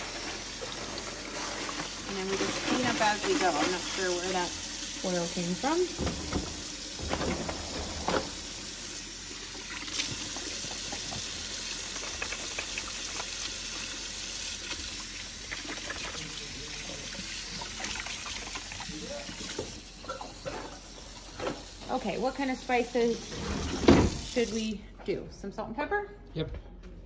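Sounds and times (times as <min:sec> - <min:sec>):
tap running into a sink: 0:05.8 - 0:08.4.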